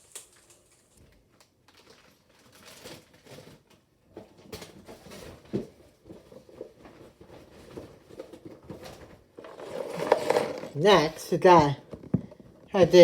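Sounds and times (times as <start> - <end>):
toy packaging rustling: 1.6 - 3.8, 7.5 - 12.9.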